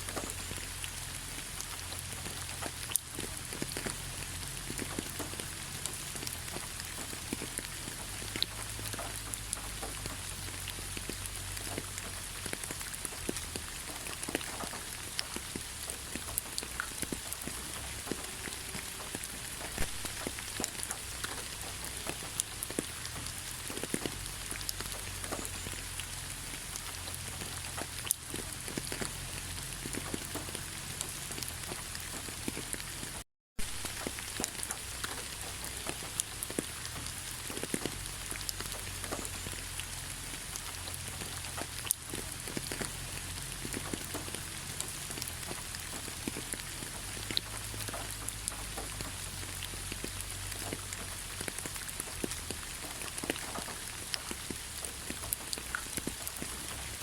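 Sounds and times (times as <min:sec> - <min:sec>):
raindrops ticking close by: 0:00.0 - 0:57.0
steady rain falling: 0:00.0 - 0:57.0.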